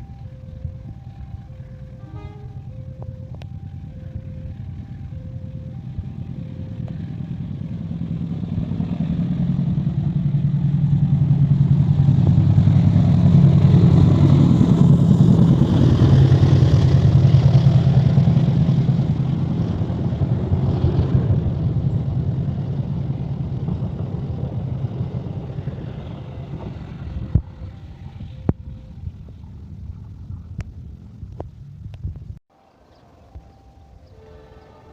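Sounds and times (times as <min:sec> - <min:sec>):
diesel locomotive engine drone: 0:00.0 - 0:34.9.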